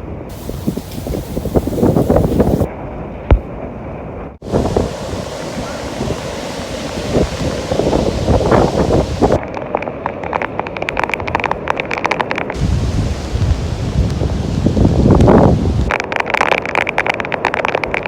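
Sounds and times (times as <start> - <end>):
strong wind buffeting microphone: 0.0 - 9.4, 12.5 - 15.9
surf rushing: 4.4 - 9.4, 12.6 - 15.9.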